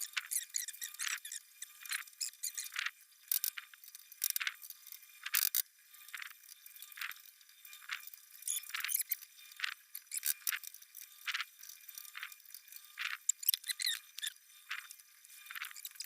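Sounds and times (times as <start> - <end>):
steel shelving squeaking and clinking: 0.0 - 2.8, 13.3 - 14.3.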